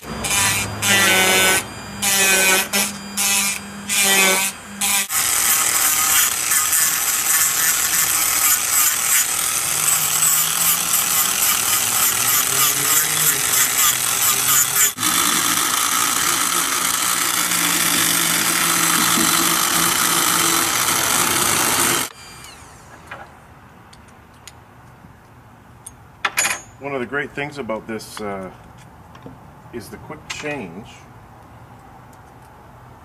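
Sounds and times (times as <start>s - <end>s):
motor hum: 0.0s - 23.2s
electric carver chattering in wood: 0.1s - 22.6s.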